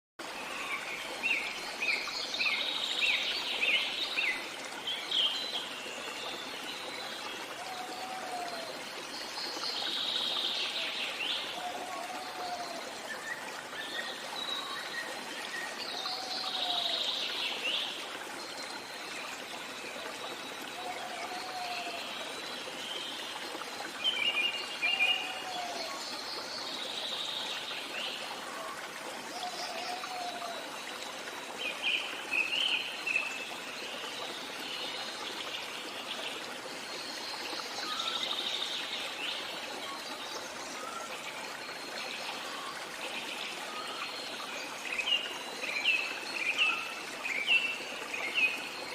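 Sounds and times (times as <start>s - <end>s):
stream trickling: 0.2s - 48.9s.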